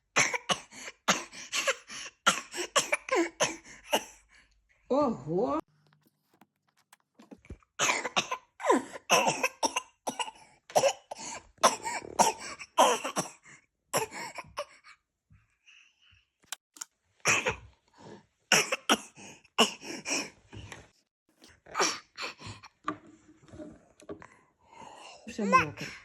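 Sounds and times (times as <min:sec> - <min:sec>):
child coughing: 0:00.2 - 0:04.2, 0:07.8 - 0:13.4, 0:17.3 - 0:17.6, 0:18.5 - 0:19.8, 0:25.4 - 0:26.0.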